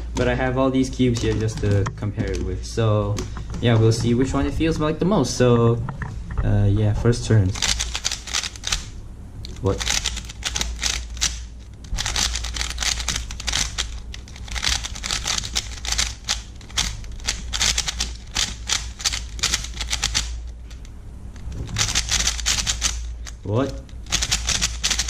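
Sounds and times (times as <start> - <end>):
puzzle cube clicking: 1.1 - 2.6, 7.6 - 8.9, 9.5 - 25.0.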